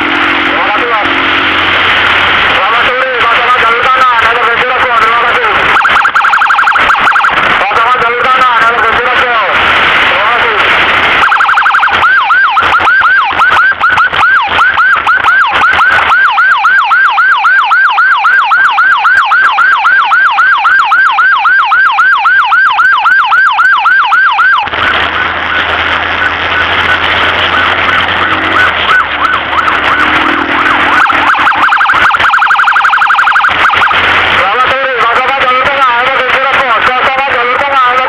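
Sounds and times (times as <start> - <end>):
siren yelping: 0.0 - 9.5, 10.2 - 38.0
siren wail: 0.0 - 38.0
fast high warble: 5.0 - 7.4, 11.2 - 25.6, 26.2 - 34.0.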